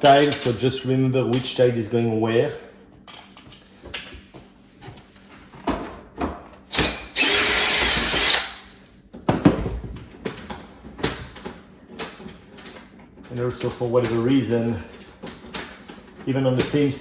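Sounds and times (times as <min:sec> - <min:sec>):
cordless drill whirring: 0:06.7 - 0:08.6
clicks and knocks of handling: 0:09.1 - 0:17.0.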